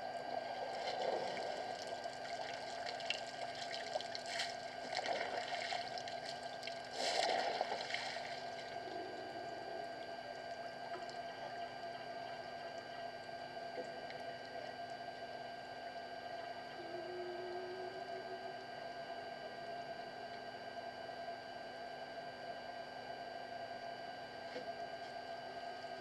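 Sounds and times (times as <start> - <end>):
water splashing and pouring: 0.7 - 8.5.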